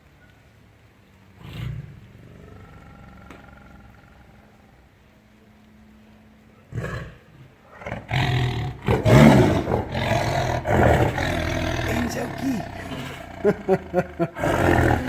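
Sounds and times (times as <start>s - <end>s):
tiger roaring: 1.3s - 4.9s, 6.7s - 15.0s
tiger growling: 1.3s - 5.0s, 6.6s - 15.0s.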